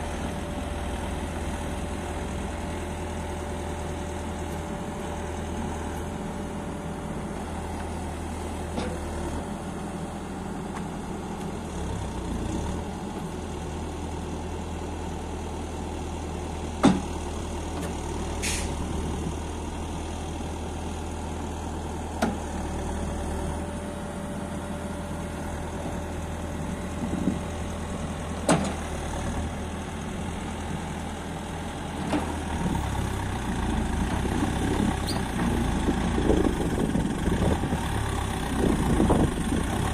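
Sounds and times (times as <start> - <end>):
backhoe diesel engine running: 0.0 - 39.9
short hiss: 18.4 - 18.8.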